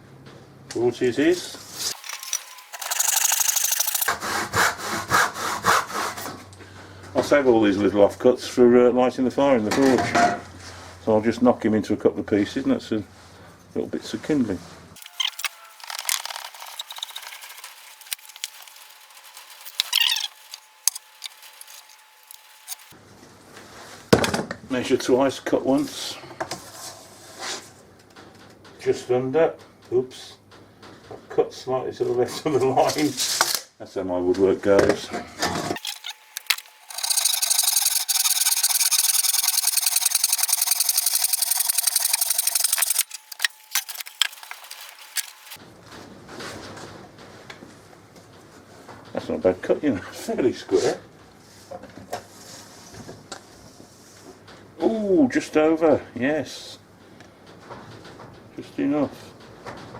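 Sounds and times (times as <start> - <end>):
wood cracking scrape: 1.9 - 4.2, 15.0 - 22.9, 35.8 - 45.6
hand saw cutting wood: 1.9 - 6.4, 15.0 - 22.9, 35.8 - 45.6.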